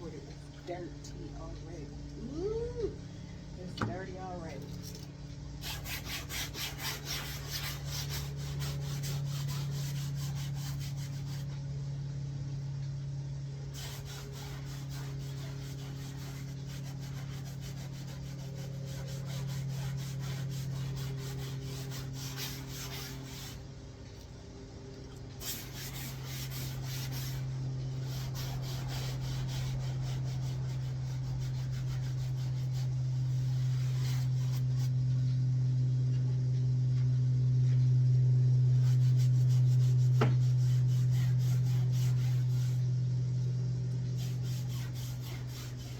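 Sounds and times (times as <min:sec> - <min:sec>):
low hum: 0:00.0 - 0:45.9
fabric being scrubbed: 0:05.6 - 0:11.5, 0:13.7 - 0:23.7, 0:25.4 - 0:35.0, 0:38.7 - 0:43.0, 0:44.1 - 0:45.9.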